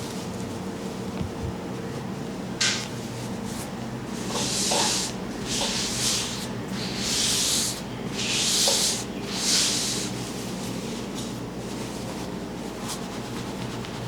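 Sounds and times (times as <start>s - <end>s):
massage strokes rubbing skin: 4.2s - 10.2s.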